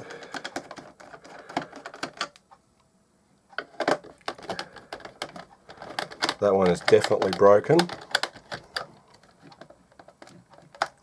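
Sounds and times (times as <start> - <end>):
screwdriver clicking on plastic: 3.8 - 11.0.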